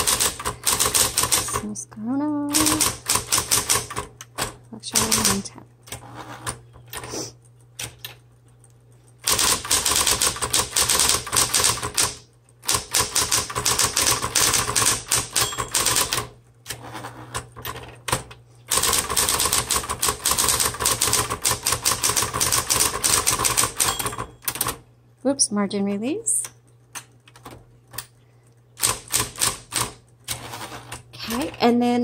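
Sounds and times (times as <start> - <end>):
typewriter keystrokes: 0.0 - 1.7, 2.5 - 7.0, 9.2 - 24.8, 28.8 - 31.0
typewriter motor hum: 0.0 - 1.8, 2.4 - 24.8, 28.8 - 31.7.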